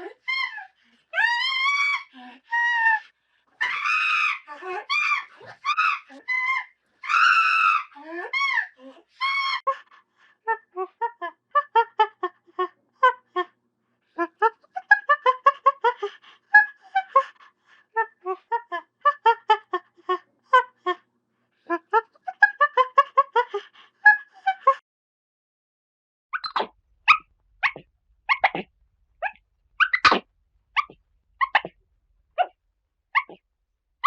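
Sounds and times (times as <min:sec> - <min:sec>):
monkey chattering: 0:26.4 - 0:30.2, 0:30.8 - 0:31.8, 0:33.2 - 0:33.4.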